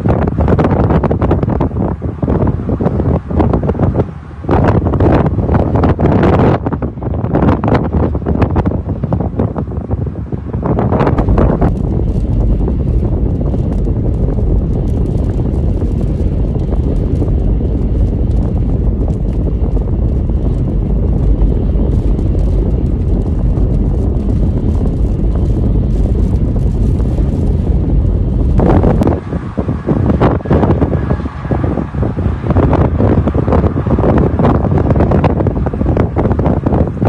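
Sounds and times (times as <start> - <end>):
storm wind buffeting microphone: 0.0 - 37.0.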